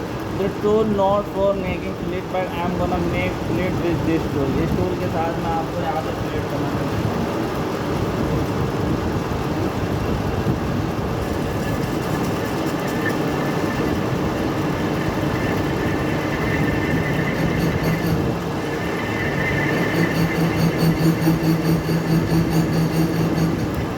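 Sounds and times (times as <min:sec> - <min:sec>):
metal lathe cutting: 0:11.2 - 0:23.9.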